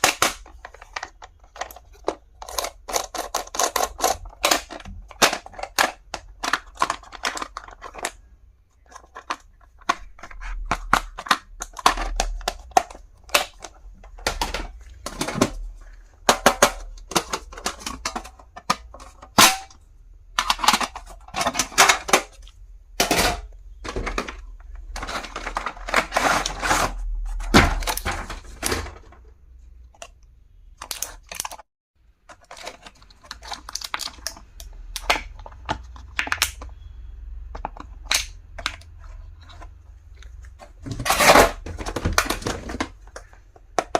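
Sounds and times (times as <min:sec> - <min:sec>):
packaging rustling: 0:23.8 - 0:29.2.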